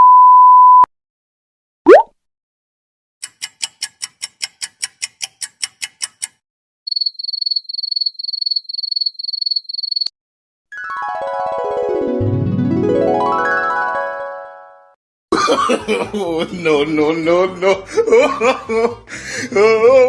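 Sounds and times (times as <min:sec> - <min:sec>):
click: 0:03.2 - 0:06.4.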